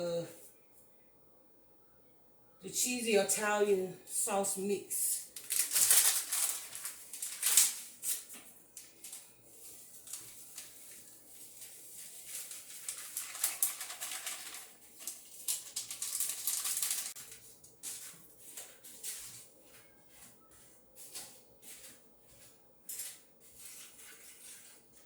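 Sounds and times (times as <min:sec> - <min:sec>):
food frying in hot grease: 0:09.6 - 0:17.4.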